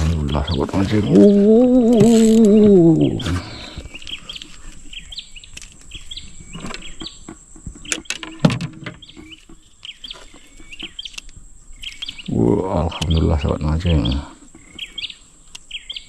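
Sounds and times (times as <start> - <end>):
bird chirping: 0.0 - 16.0
sharp knocks and clicks: 6.6 - 9.6.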